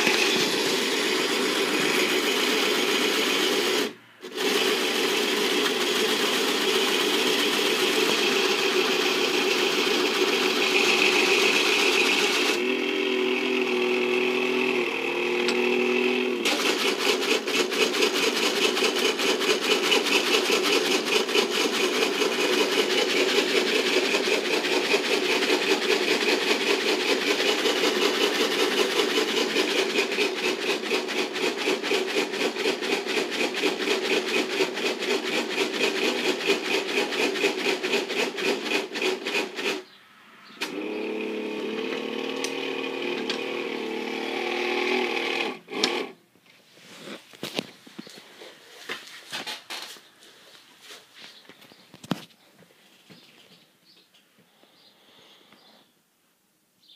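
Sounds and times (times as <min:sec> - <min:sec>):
toy electric motor whirring: 0:00.0 - 0:39.9, 0:40.6 - 0:46.2.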